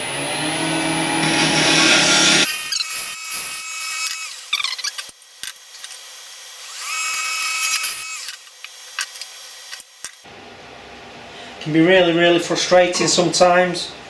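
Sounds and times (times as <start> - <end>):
wood lathe whining: 0.0 - 5.4, 6.0 - 8.9.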